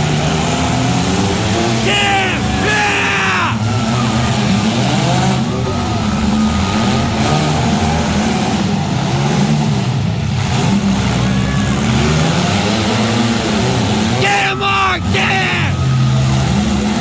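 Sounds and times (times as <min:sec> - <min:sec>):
car engines revving: 0:00.0 - 0:17.0.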